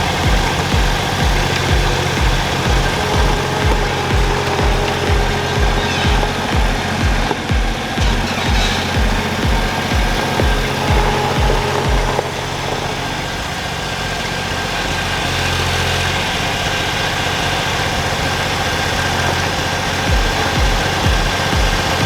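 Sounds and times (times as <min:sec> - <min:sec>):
low rhythmic thumping: 0:00.0 - 0:13.6, 0:20.0 - 0:22.0
diesel engine running: 0:00.0 - 0:22.0.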